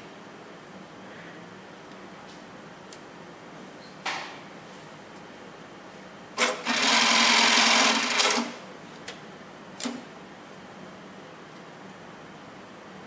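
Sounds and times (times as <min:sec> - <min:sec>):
sewing machine stitching: 0:06.4 - 0:08.6.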